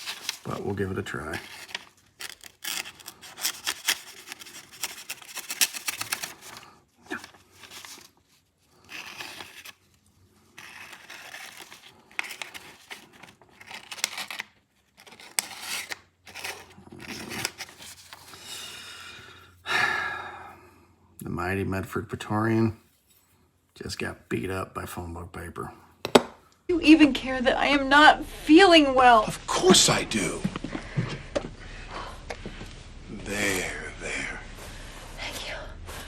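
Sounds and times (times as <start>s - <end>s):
knife tearing thin paper: 0.0s - 0.7s, 1.3s - 8.1s, 8.8s - 9.9s, 10.6s - 18.2s.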